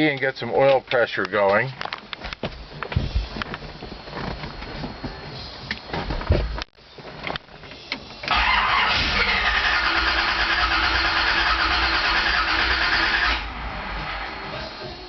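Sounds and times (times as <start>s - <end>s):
engine starter cranking: 8.2s - 13.5s.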